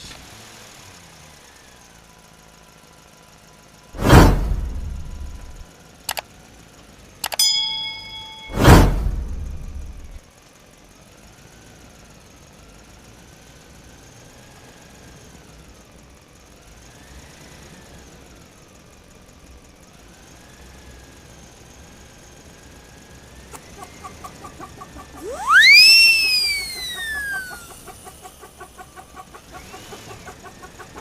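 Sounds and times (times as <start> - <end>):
faint wavering cartoon tones: 25.1 - 28.0
short electronic pulses: 25.2 - 27.9
whistle-like sweeping note: 25.2 - 27.9.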